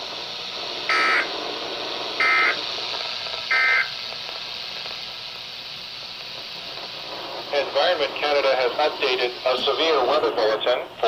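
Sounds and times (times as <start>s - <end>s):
radio hiss: 0.0s - 11.0s
buzzy data bursts: 0.8s - 5.2s, 6.5s - 11.0s.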